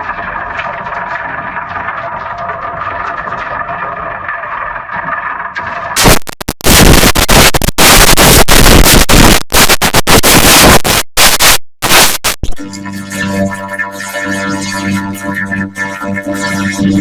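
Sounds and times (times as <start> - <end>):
harsh distorted noise: 5.9 - 17.0
steady electronic tones: 6.0 - 17.0.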